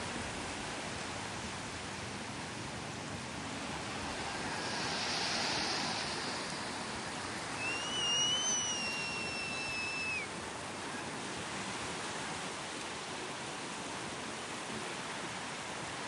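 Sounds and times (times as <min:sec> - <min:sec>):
sea surf washing onto beach: 0:00.0 - 0:16.0
long steady whistle: 0:04.4 - 0:10.4.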